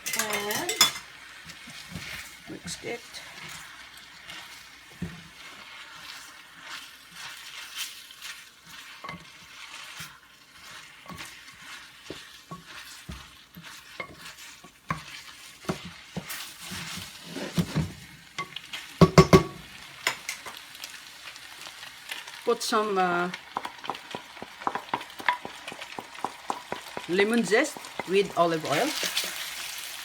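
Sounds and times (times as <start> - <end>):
food sizzling in a frying pan: 0.0 - 30.0
utensil scraping and knocking pan: 11.0 - 18.0, 23.5 - 29.5.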